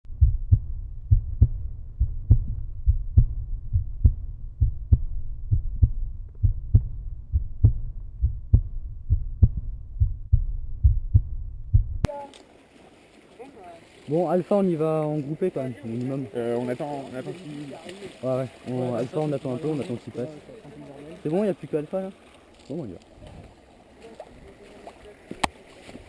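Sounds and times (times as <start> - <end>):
heartbeat thuds: 0.0 - 12.1
low rumble: 0.0 - 12.1.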